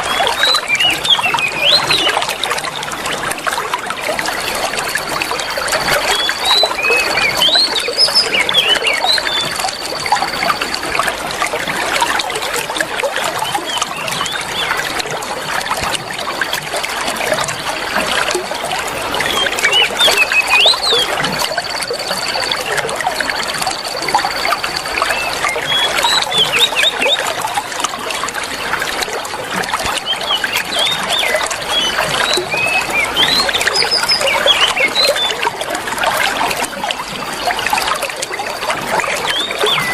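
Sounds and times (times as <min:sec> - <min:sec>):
bird chirping and whistling: 0:00.0 - 0:02.2, 0:06.0 - 0:10.6, 0:19.3 - 0:22.8, 0:25.1 - 0:27.4, 0:30.0 - 0:35.4, 0:39.2 - 0:39.9
trickling water: 0:00.0 - 0:39.9.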